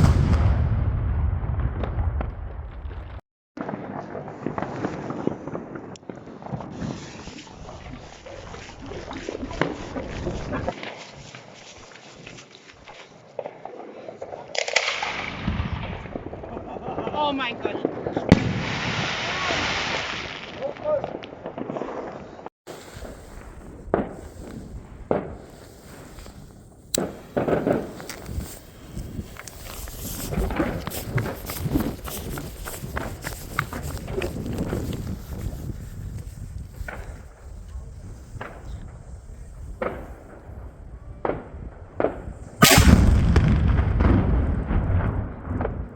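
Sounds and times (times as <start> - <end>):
firecrackers banging: 14.5 - 34.8, 41.2 - 45.9.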